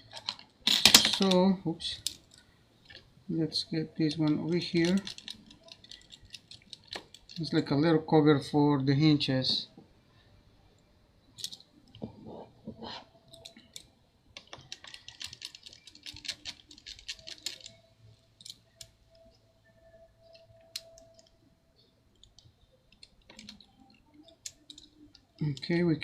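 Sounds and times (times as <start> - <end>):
metal tools clicking and scraping: 0.0 - 1.4, 4.2 - 7.6.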